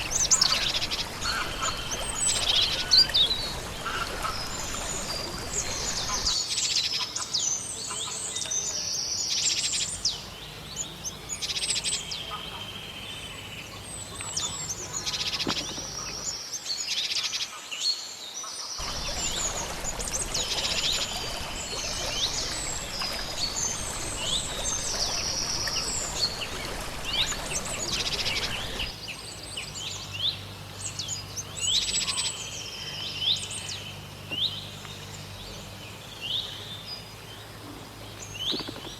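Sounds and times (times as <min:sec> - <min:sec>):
small songbirds chirping: 0:00.0 - 0:17.2, 0:18.8 - 0:38.9
faint low hum: 0:18.8 - 0:38.5.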